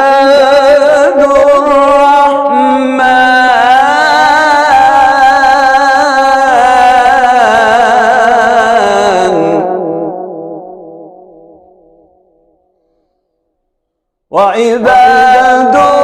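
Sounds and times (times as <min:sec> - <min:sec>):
man reciting melodically: 0:00.0 - 0:10.6, 0:14.3 - 0:16.0.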